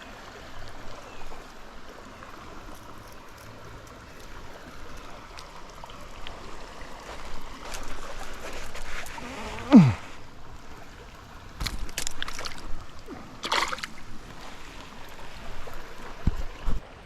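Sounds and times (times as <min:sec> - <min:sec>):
creek water running: 0:00.0 - 0:17.0
fish splashing: 0:13.4 - 0:14.0.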